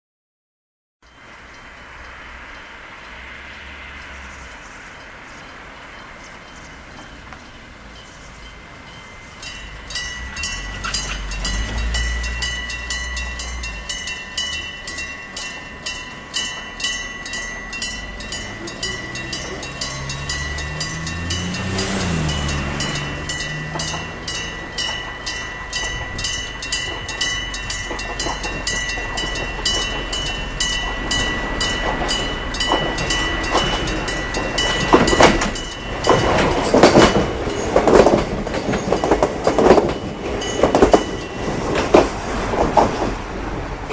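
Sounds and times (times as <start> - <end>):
vehicle passing hum: 1.4 - 8.8, 9.4 - 39.4
level crossing bell ringing: 8.0 - 41.8
train wheels knocking over rail joints: 9.4 - 43.9.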